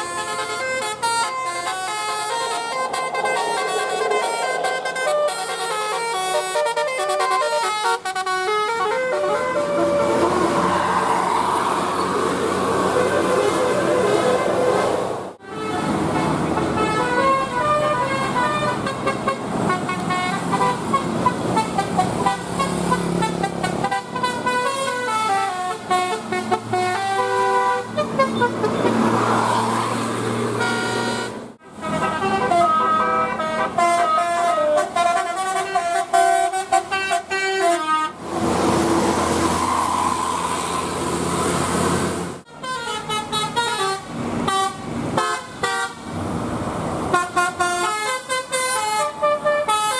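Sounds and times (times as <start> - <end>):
musical bus horns playing tunes: 0.0 - 10.7, 12.6 - 29.2, 30.3 - 38.3, 42.4 - 46.2, 47.0 - 49.9
even rushing noise: 2.1 - 6.2.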